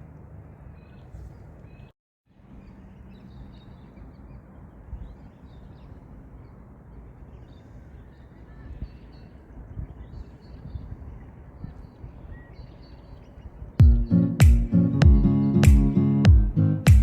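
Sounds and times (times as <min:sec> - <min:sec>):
wind rumble on microphone: 0:04.3 - 0:15.5.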